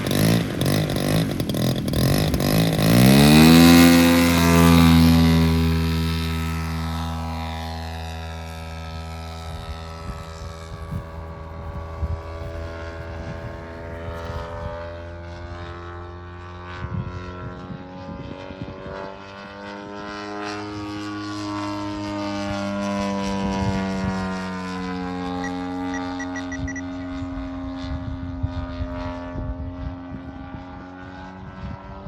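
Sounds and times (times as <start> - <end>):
model airplane engine droning: 0.0 - 32.0
wind rumbling on microphone: 6.4 - 15.9, 16.5 - 19.9, 26.1 - 32.0.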